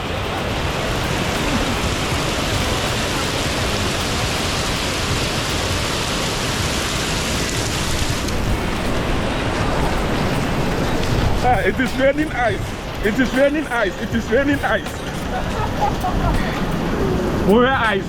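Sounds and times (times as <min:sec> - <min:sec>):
hail and rain pouring: 0:00.0 - 0:18.0.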